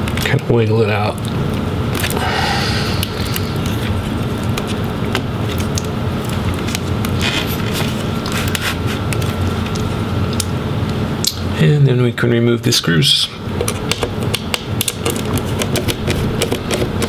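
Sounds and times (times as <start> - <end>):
low background rumble: 0.0 - 12.6
clicks of laptop parts and tools: 13.6 - 17.0.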